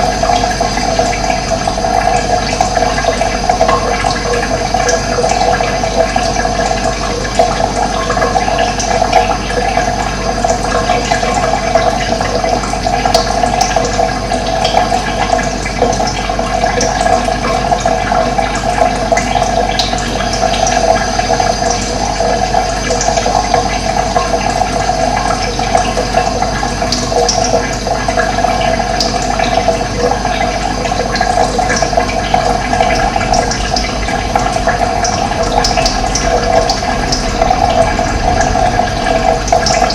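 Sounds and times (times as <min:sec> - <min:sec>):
water rushing: 0:28.8 - 0:39.9.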